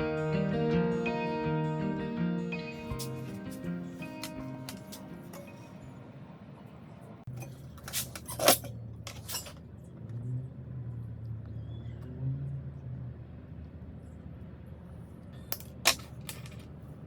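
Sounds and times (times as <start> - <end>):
metal parts clinking: 7.4 - 9.6, 15.5 - 16.7.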